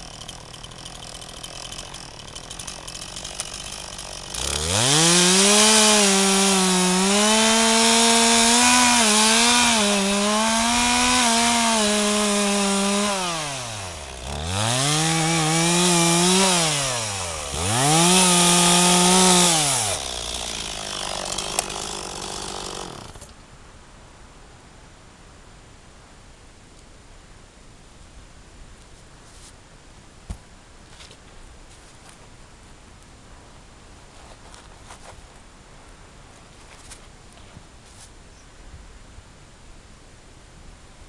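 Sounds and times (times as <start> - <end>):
chainsaw revving: 0.0 - 23.3.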